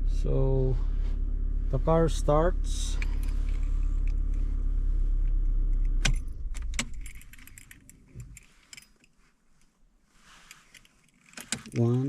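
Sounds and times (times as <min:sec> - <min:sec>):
car engine idling: 0:00.0 - 0:08.6
keys jangling: 0:02.9 - 0:04.4, 0:05.8 - 0:09.2
key clicks in ignition: 0:05.2 - 0:08.9, 0:11.1 - 0:12.0.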